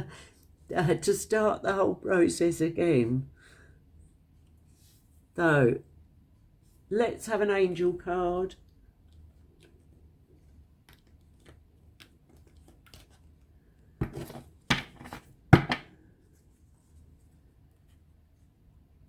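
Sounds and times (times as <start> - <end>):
cards shuffled by hand: 9.2 - 15.3.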